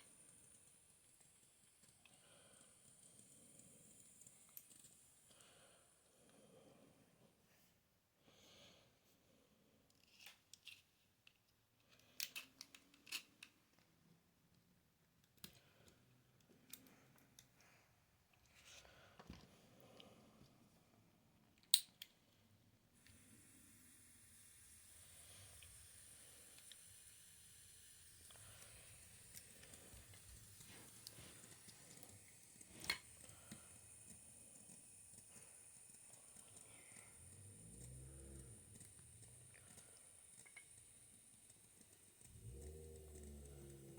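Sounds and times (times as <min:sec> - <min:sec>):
sharp clicks of small parts: 0:00.2 - 0:05.4, 0:09.9 - 0:13.9, 0:15.2 - 0:17.6, 0:21.6 - 0:22.2, 0:28.0 - 0:43.9.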